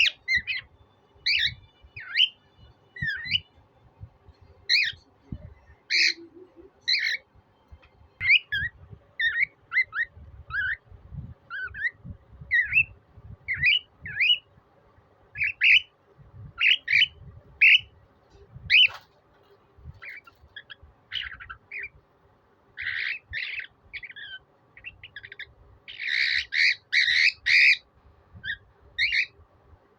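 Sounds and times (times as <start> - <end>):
cockatiel chirping whistles: 3.0 - 3.4, 11.5 - 12.9, 13.5 - 14.5.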